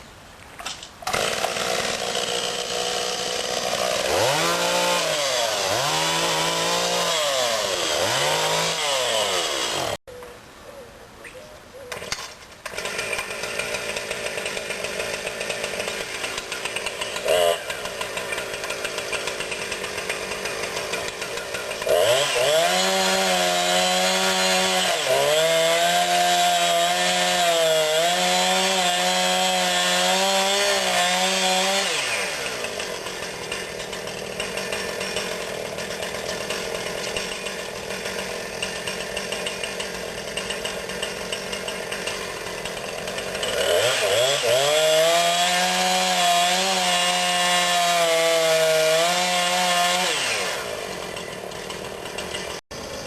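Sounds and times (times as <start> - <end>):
chainsaw idling and cutting wood: 0.7 - 10.1, 11.9 - 53.0.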